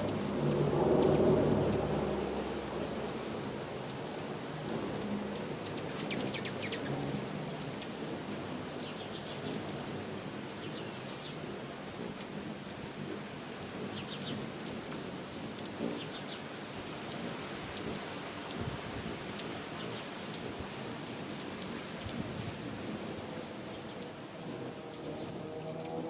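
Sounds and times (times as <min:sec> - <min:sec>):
steady background hiss: 0:00.0 - 0:26.0
small bird chirping: 0:05.3 - 0:09.6.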